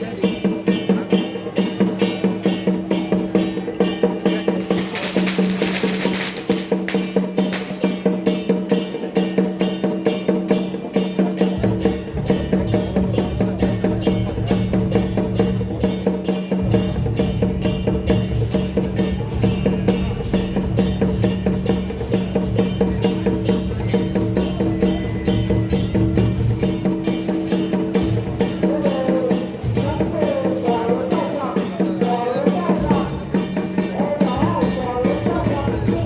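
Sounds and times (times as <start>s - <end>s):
percussion-led music: 0.0s - 36.0s
cymbal crash: 0.3s - 28.6s.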